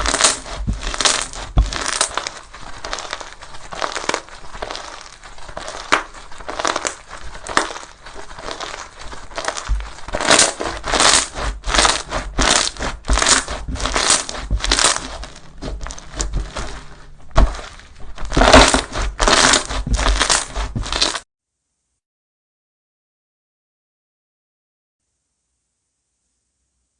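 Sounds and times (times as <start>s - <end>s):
slime squishing: 0.0s - 21.2s.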